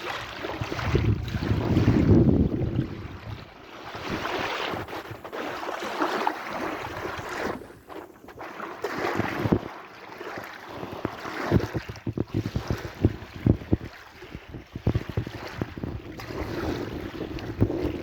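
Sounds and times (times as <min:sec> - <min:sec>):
sea waves washing in: 0:00.0 - 0:09.8, 0:10.4 - 0:18.0
wind buffeting microphone: 0:00.3 - 0:05.4, 0:10.8 - 0:18.0.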